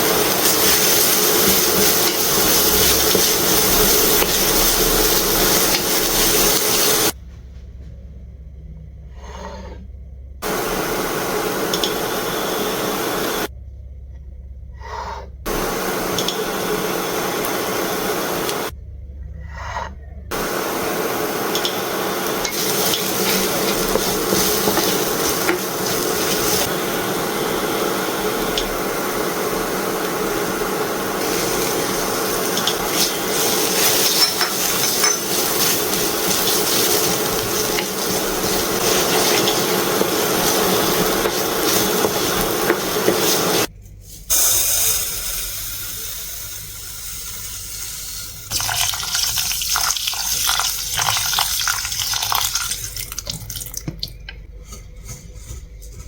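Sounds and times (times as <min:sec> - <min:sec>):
food sizzling in oil: 0:00.0 - 0:07.2, 0:20.3 - 0:43.7, 0:44.3 - 0:54.0
low hum: 0:07.2 - 0:17.8, 0:18.5 - 0:44.2.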